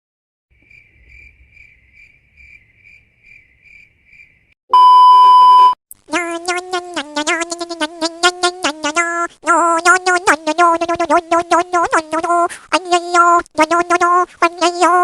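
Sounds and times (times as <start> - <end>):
loud steady beep: 4.7 - 5.8.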